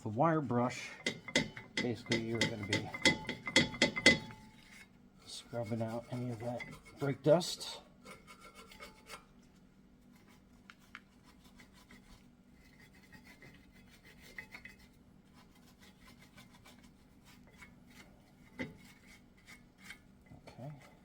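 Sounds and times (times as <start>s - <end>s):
wire brush scratching metal: 1.0s - 9.3s.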